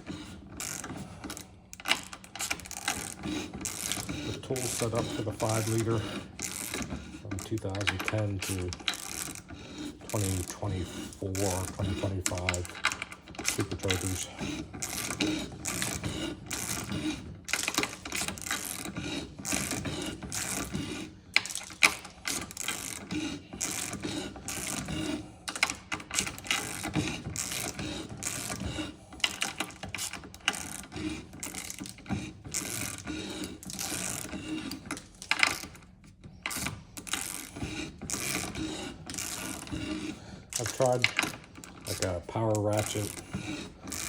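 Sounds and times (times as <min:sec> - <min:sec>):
hand ratchet clicking: 0:00.0 - 0:44.0
cutter cutting metal: 0:02.7 - 0:12.7, 0:36.5 - 0:41.2, 0:41.9 - 0:44.0.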